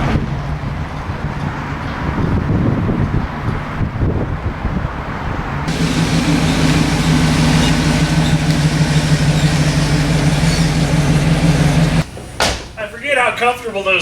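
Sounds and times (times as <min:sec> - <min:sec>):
car engine running: 0:05.7 - 0:12.1.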